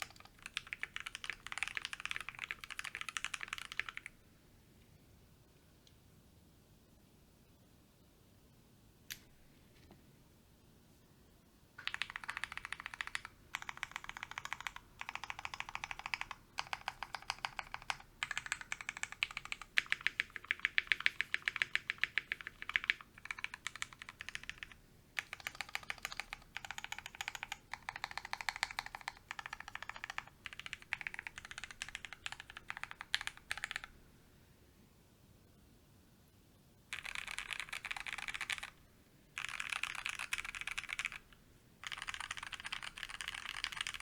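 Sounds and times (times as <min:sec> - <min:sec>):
fast typing on mechanical keyboard: 0:00.0 - 0:04.1, 0:11.8 - 0:33.9, 0:36.9 - 0:38.8, 0:39.4 - 0:44.0.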